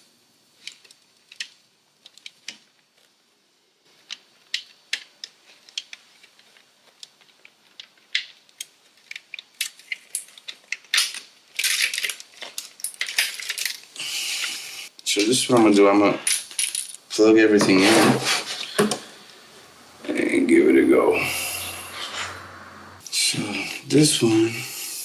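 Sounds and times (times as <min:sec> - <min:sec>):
plastic and metal parts clicking: 0:04.0 - 0:13.8.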